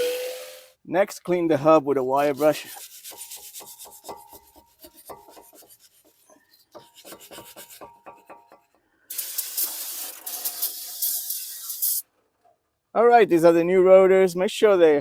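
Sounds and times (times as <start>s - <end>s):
wire brush scrubbing metal: 2.0s - 12.0s
aerosol spray hiss: 9.1s - 12.0s.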